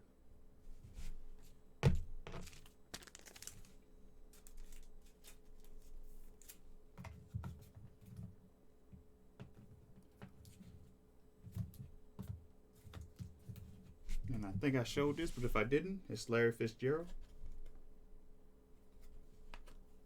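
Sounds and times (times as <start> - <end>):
cards clicking and tapping: 2.2 - 3.8, 19.5 - 19.8
wrapper crinkling: 2.3 - 5.8.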